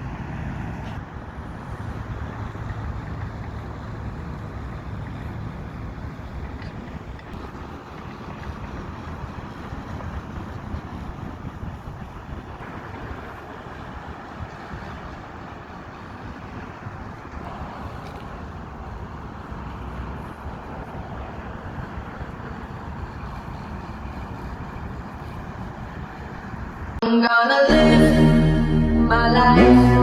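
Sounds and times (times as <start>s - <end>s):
helicopter engine and rotor noise: 20.2s - 27.0s.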